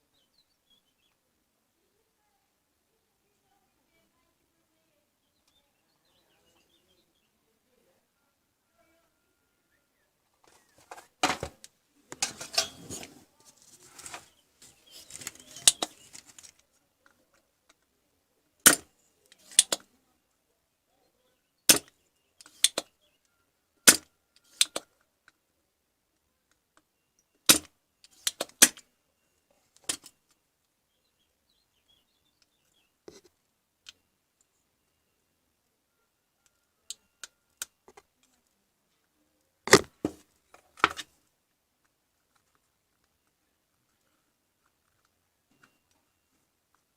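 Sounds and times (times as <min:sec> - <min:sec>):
hard objects clicking and knocking: 0:39.7 - 0:41.1.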